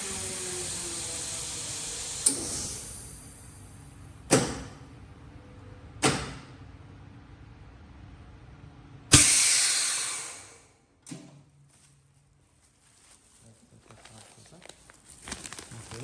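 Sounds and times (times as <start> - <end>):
air hissing: 9.1 - 10.8
vacuum packing machine rumble: 13.7 - 16.0.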